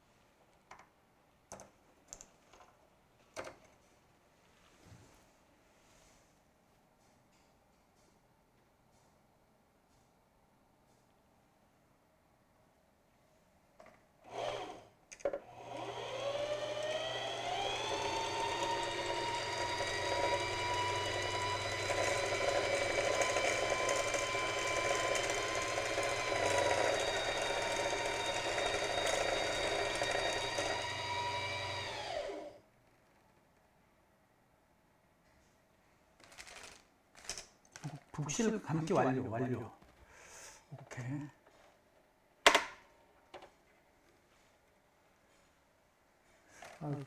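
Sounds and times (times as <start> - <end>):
sewing machine motor whirring: 14.3 - 32.6.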